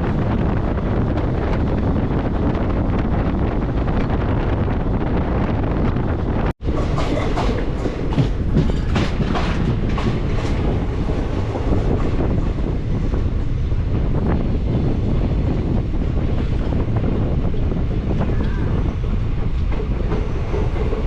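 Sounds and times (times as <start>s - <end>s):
train rumbling: 0.0s - 21.0s
wheels clacking over rail joints: 6.6s - 13.5s, 17.4s - 21.0s.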